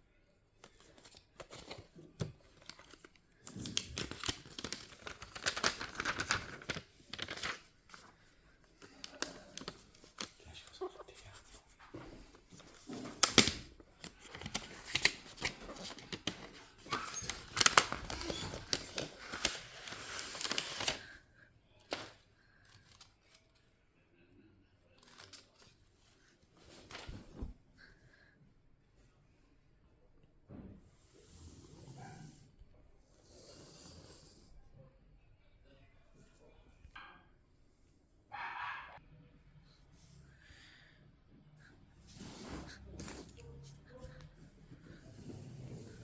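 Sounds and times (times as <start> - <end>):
plastic film and paper tearing: 2.8 - 7.6, 13.1 - 21.1.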